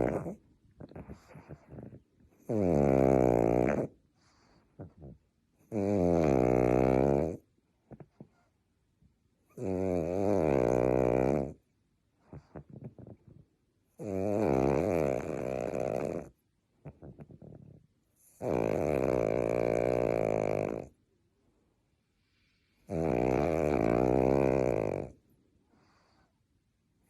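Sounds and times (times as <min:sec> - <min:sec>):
dog snoring: 0:00.0 - 0:08.5, 0:09.5 - 0:11.6, 0:12.2 - 0:21.0, 0:22.4 - 0:26.3.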